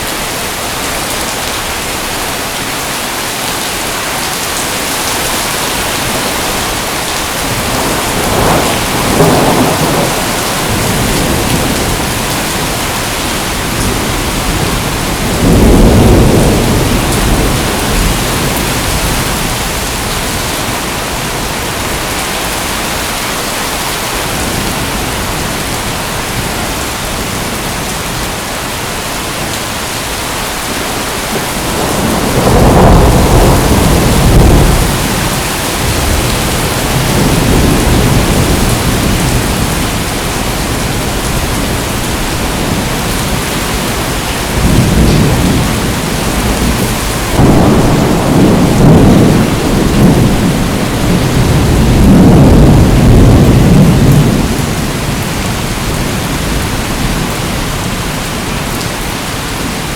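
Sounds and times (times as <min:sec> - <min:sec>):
steady rain falling: 0:00.0 - 0:59.9
rolling thunder: 0:04.6 - 0:22.8, 0:30.6 - 0:58.0.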